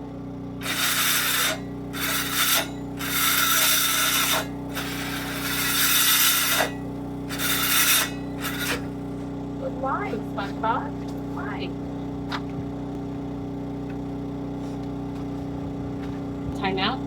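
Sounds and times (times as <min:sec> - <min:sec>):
saw cutting through foam: 0:00.6 - 0:09.0.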